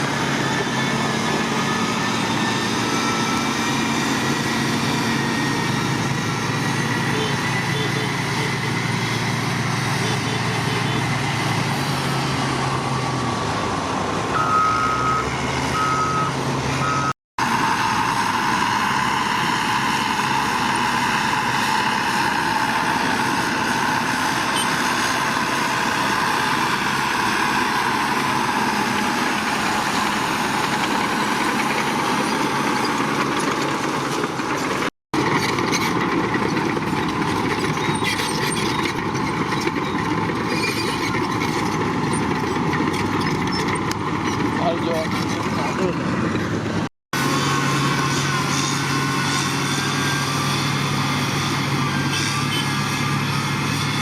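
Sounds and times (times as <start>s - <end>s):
diesel engine running: 0.0s - 54.0s
reversing alarm beeping: 1.6s - 3.8s, 14.3s - 17.2s.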